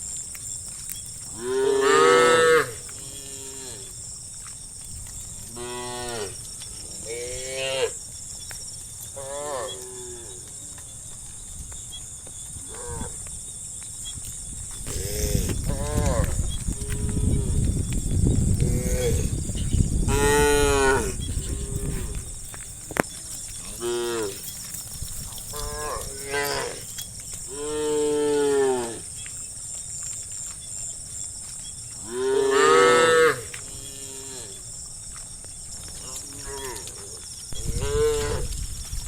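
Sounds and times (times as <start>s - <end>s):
cattle mooing: 1.4s - 3.9s, 20.1s - 22.3s, 23.6s - 24.5s, 25.3s - 26.9s.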